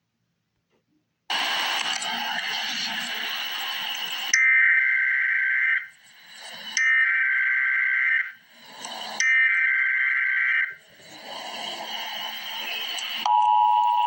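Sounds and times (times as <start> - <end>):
hiss: 1.3 - 4.3
buzzy electronic data screeches: 1.3 - 13.3
two-tone attention signal: 12.5 - 14.0.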